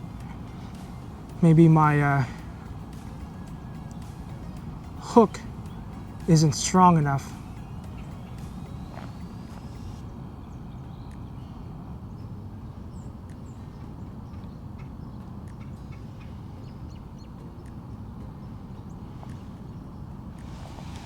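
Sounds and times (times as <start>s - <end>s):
low rush of water or wind: 0.0s - 14.3s, 18.9s - 21.0s
faint bird chirps: 0.0s - 21.0s
small ticks: 2.3s - 6.3s, 7.2s - 10.0s, 13.2s - 21.0s.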